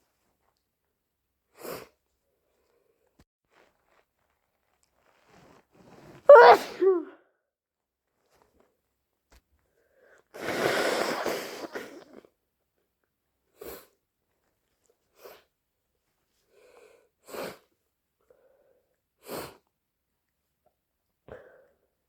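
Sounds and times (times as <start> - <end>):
wet nose blowing: 1.6 - 1.9, 5.3 - 7.0, 10.3 - 12.2, 17.2 - 17.7, 19.2 - 19.6
sharp sniffles: 10.3 - 12.2
quiet breaths: 16.4 - 19.7.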